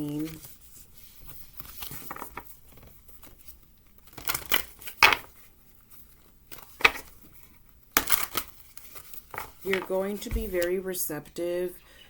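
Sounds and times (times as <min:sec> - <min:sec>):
rustling snaps of handling: 0:01.5 - 0:10.8.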